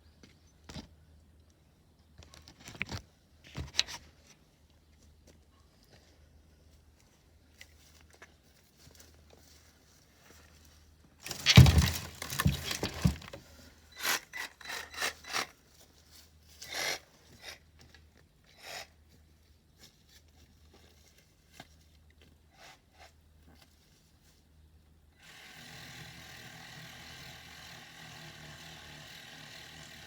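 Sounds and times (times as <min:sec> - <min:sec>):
branches crashing and scraping: 0:11.2 - 0:13.5.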